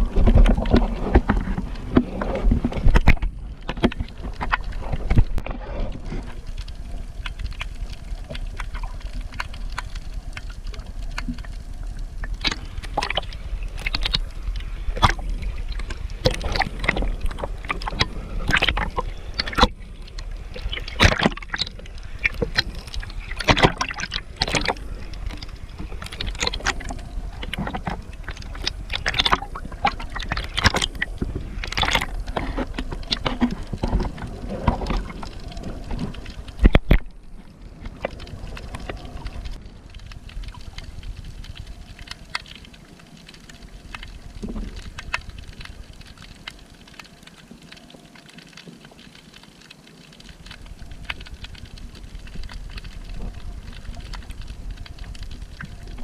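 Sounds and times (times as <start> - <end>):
water splashes and knocks: 0.0 - 10.4, 12.2 - 19.9, 20.5 - 39.6.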